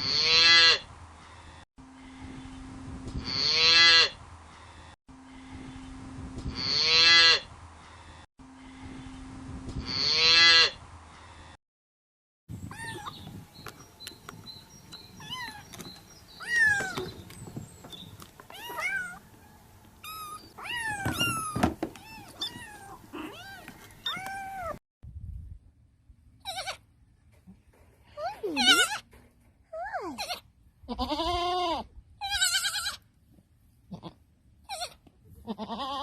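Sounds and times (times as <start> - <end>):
cat meowing: 18.5 - 19.2, 20.0 - 24.8.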